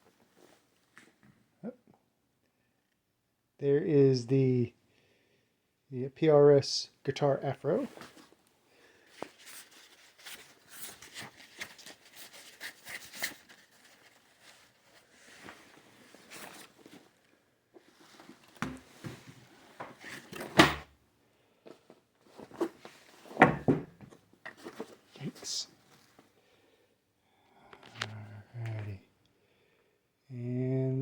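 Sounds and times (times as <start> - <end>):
packaging rustling: 9.0 - 17.2.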